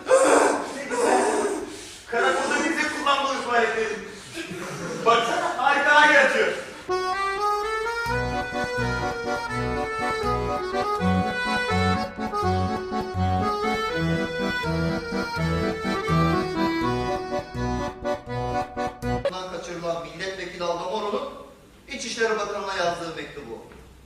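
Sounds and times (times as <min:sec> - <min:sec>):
accordion music: 0:06.5 - 0:19.4.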